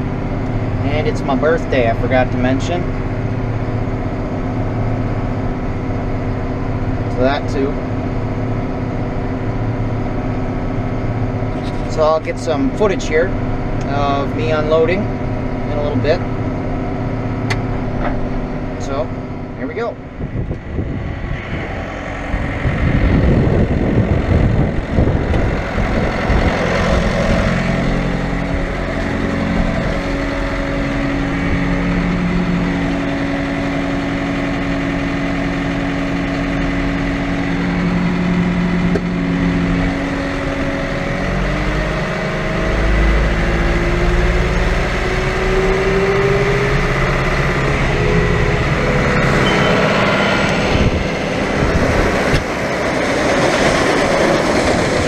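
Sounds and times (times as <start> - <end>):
combine harvester running: 0.0 - 55.0
rising tone: 15.4 - 55.0.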